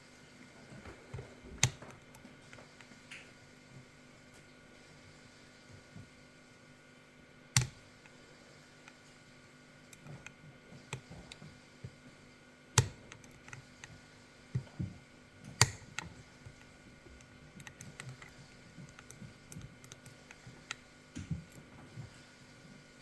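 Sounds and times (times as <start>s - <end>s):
lock pick clicks and taps: 7.6s - 8.2s, 12.8s - 21.7s.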